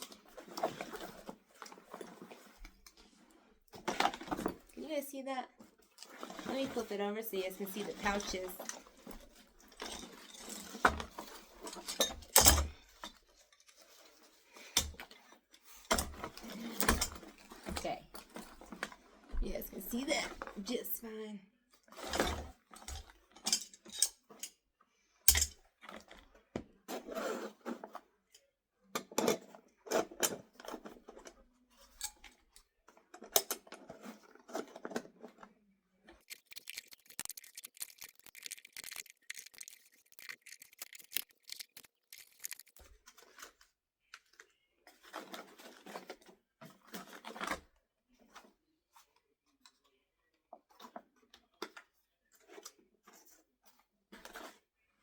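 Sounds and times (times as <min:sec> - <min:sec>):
tools clicking and knocking: 0:09.7 - 0:13.2, 0:25.3 - 0:25.6.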